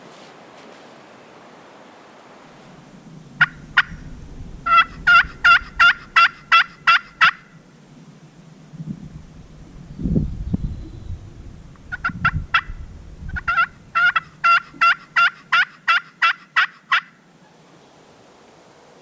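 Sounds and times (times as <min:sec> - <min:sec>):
turkey yelping: 0:03.4 - 0:04.0, 0:04.7 - 0:07.5, 0:11.8 - 0:17.6.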